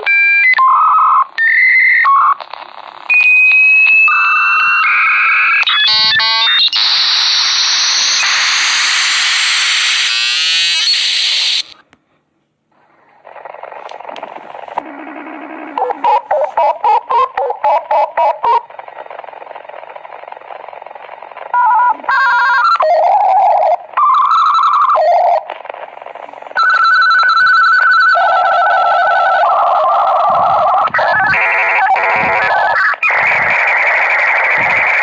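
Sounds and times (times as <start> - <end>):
loud steady modem hiss: 1.2 - 35.0
faint dial tone: 18.4 - 32.9
touch-tone dialling beeps: 26.6 - 29.5.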